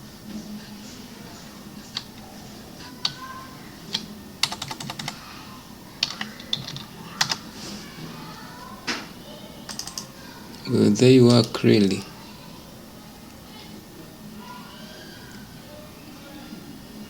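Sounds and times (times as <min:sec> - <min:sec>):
keyboard typing: 0:03.9 - 0:05.2, 0:06.0 - 0:07.5, 0:09.7 - 0:10.1.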